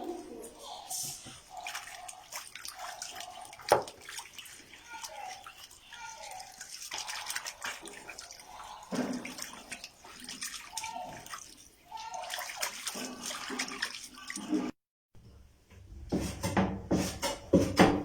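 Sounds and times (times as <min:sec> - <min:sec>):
water sloshing in a basin: 0:00.0 - 0:14.8
hand scrubbing: 0:00.6 - 0:14.7.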